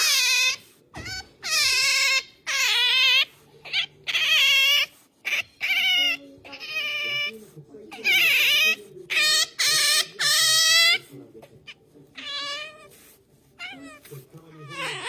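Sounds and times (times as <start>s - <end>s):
otter whining squeals: 12.2s - 15.0s.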